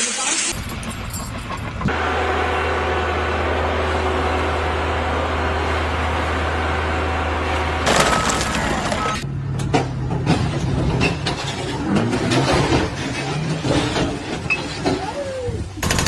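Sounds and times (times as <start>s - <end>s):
machine engine humming: 1.6s - 9.3s.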